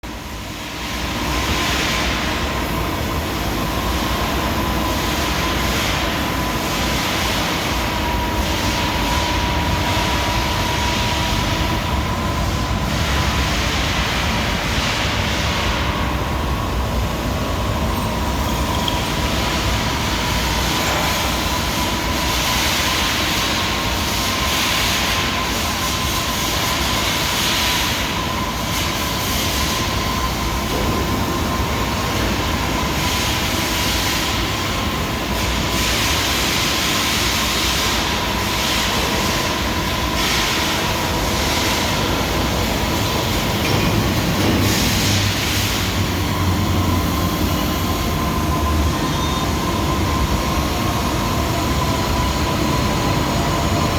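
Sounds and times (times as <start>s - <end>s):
constant machine whine: 0.0s - 53.9s.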